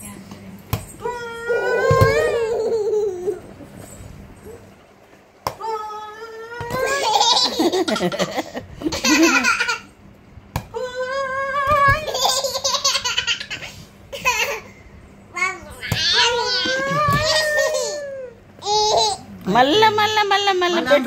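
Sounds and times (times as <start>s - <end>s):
baby laughing hysterically: 6.9s - 9.9s, 12.0s - 14.6s.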